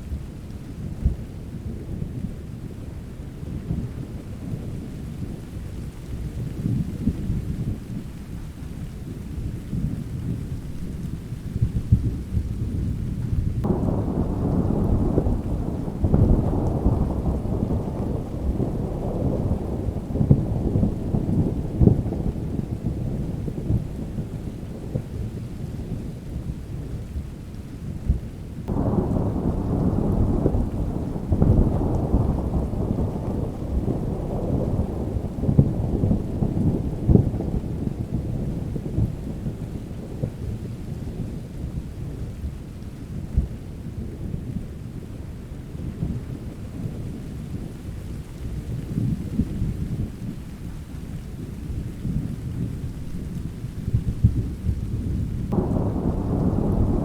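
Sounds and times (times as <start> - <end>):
rain falling: 0.0 - 57.0
rolling thunder: 3.4 - 27.3, 28.0 - 44.8, 45.6 - 57.0
thunderclap: 9.8 - 25.2, 28.1 - 41.3, 51.7 - 57.0.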